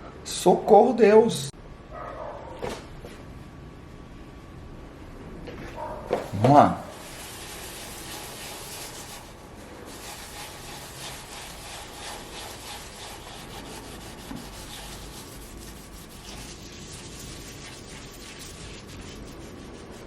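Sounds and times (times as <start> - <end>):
gritty rubbing on copper: 6.3 - 20.0.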